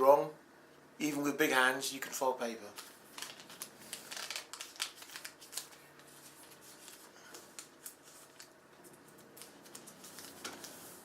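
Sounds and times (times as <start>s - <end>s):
paper rustling and creasing: 2.7s - 11.0s.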